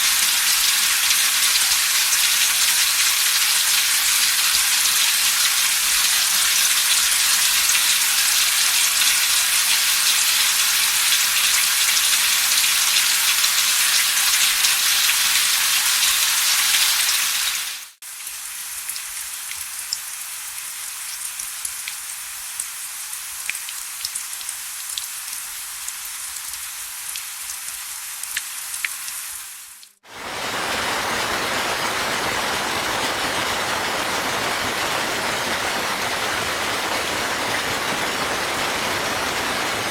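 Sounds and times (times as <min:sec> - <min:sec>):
steady rain downpour: 0:00.0 - 0:39.9.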